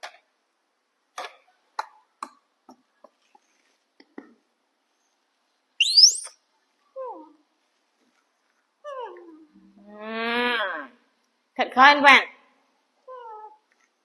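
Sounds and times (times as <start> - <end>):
high-pitched squeak: 5.8 - 6.3.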